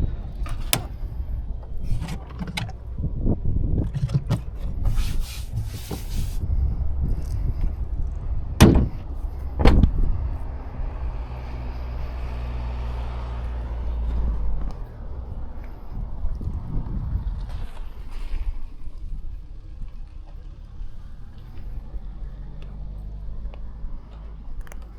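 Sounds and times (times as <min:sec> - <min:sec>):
clicks and knocks: 0:00.1 - 0:02.9.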